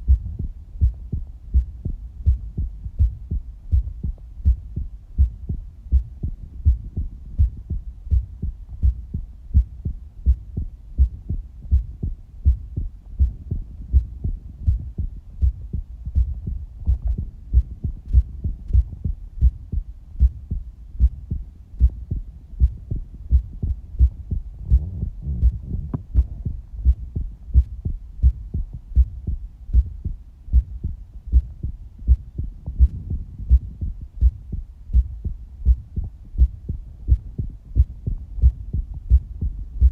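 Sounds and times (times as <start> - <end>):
heartbeat thumps: 0.0 - 39.9.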